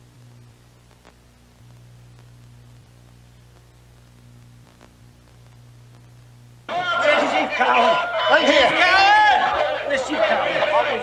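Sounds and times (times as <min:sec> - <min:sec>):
soft hiss: 0:00.0 - 0:06.7
electrical hum: 0:00.0 - 0:11.0
faint clicks: 0:00.1 - 0:06.4.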